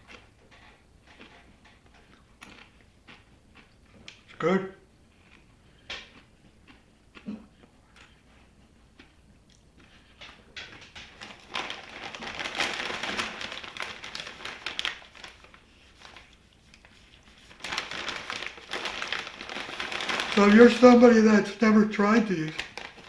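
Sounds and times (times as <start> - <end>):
chip bag crinkling: 9.9 - 23.0.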